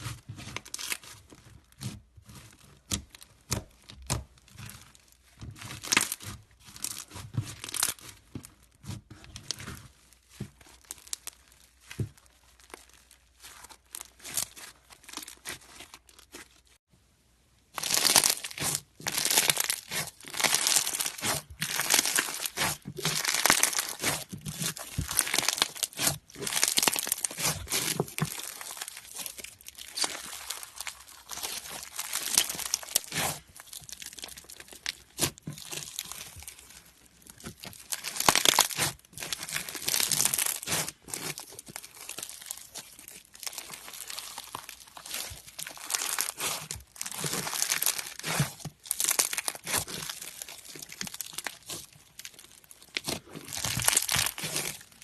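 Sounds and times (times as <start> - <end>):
slime crackling and popping: 0.0 - 16.8, 17.7 - 55.0
slime squeezed and stretched: 0.0 - 16.8, 17.7 - 55.0.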